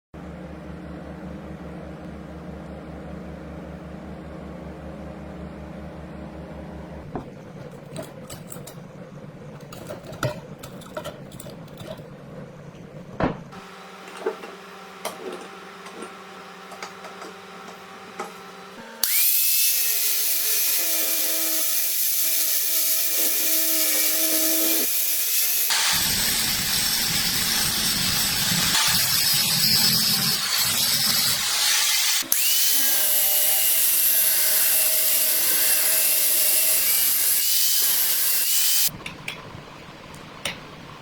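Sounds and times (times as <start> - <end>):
power tool running: 13.5 - 39.0.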